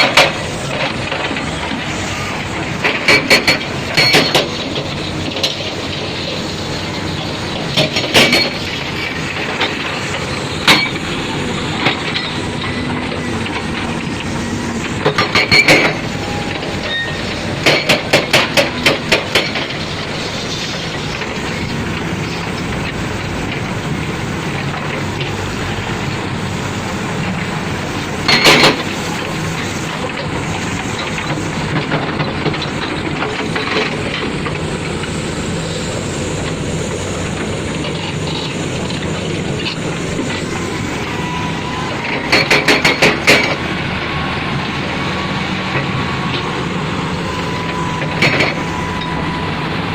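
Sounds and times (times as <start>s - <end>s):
sharp knocks and clanks: 0.0s - 6.5s, 7.4s - 11.1s, 11.7s - 23.7s, 27.3s - 35.2s, 42.0s - 43.7s, 47.7s - 49.0s
heavy construction machinery: 0.0s - 49.9s.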